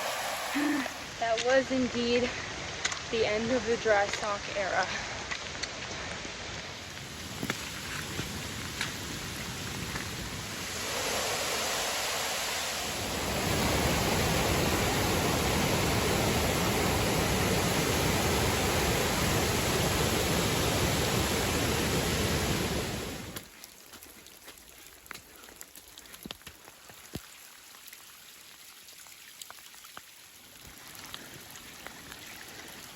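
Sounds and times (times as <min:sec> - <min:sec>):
stream water rushing: 0:00.0 - 0:02.2, 0:06.8 - 0:23.8.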